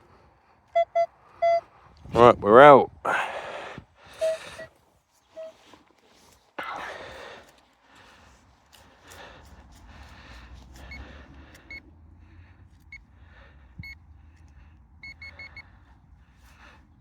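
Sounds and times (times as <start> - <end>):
metal detector beeping: 0.8 - 1.7, 4.2 - 4.7, 5.4 - 5.6, 15.0 - 15.6
soil and hand rustling: 4.2 - 10.9.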